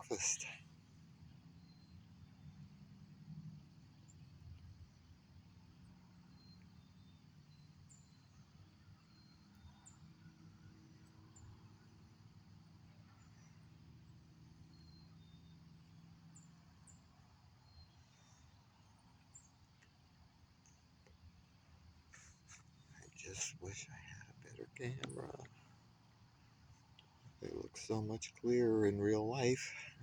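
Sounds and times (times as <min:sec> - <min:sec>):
faint high-pitched chirps: 0:00.0 - 0:00.8, 0:06.2 - 0:12.1, 0:12.9 - 0:20.0, 0:20.6 - 0:30.0.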